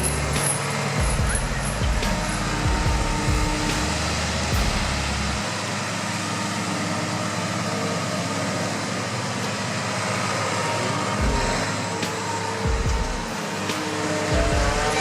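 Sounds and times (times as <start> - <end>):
low rumbles: 0.0 - 6.0
heavy machinery engine running: 0.0 - 15.0.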